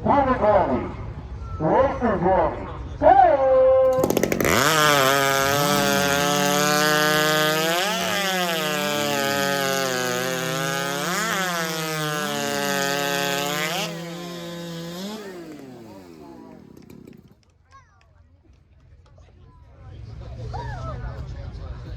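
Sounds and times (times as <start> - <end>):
chainsaw cutting through log: 3.9 - 17.4.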